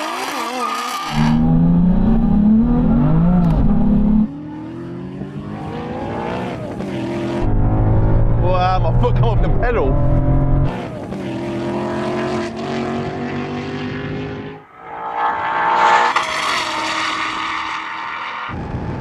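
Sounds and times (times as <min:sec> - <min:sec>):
car engine running hard: 0:05.2 - 0:13.0.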